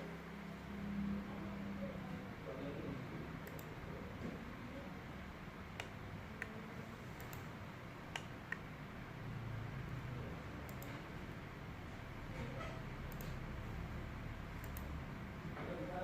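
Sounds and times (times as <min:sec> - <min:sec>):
steady low hum: 0:00.0 - 0:16.0
computer mouse clicks: 0:03.4 - 0:03.8, 0:05.7 - 0:06.6, 0:07.2 - 0:07.5, 0:08.1 - 0:08.7, 0:10.6 - 0:11.0, 0:13.0 - 0:13.6, 0:14.6 - 0:15.0.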